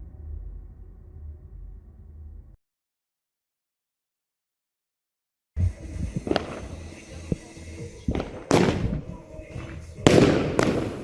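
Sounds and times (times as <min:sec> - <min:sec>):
loud firework bangs: 0:06.2 - 0:11.0
small firework pops: 0:06.2 - 0:11.0.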